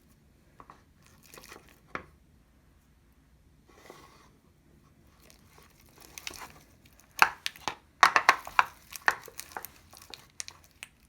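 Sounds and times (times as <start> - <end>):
slime wet crackling clicks: 8.3 - 11.0.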